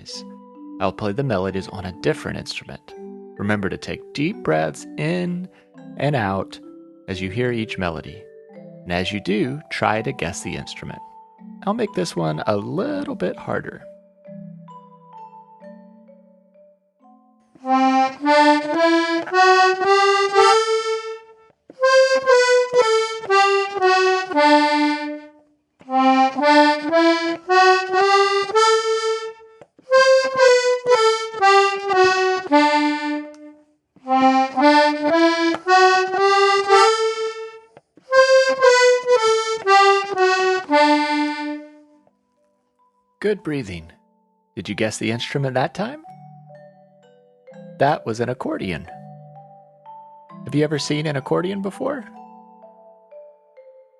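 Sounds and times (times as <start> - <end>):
accordion melody: 0.0 - 16.1, 17.6 - 42.0, 50.4 - 52.7.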